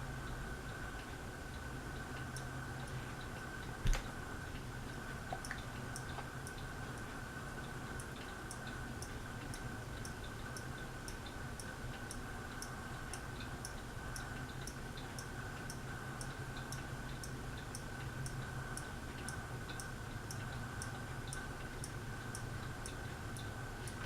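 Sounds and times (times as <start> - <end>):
ceiling fan motor hum: 0.0 - 24.0
fan ticking: 0.0 - 24.0.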